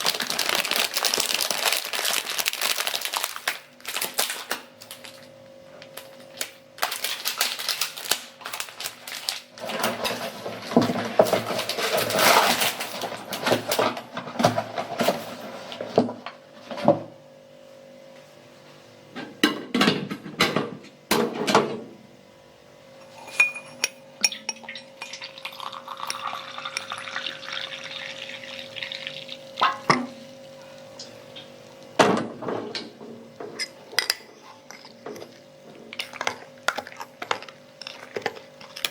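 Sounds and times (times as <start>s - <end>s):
spoon clinking against glass: 23.0s - 27.6s
milk pouring into glass: 24.5s - 30.5s.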